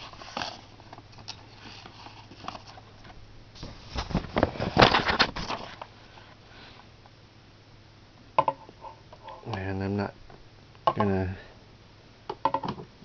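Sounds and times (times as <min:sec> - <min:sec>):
rustling and scraping: 0:00.0 - 0:06.9.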